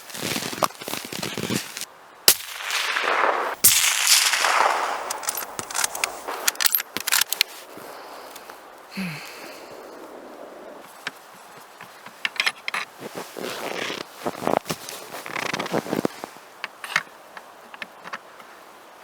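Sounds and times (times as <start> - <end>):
suppressed rifle shots: 2.3 - 7.2
rifle handling clicks: 4.1 - 7.5.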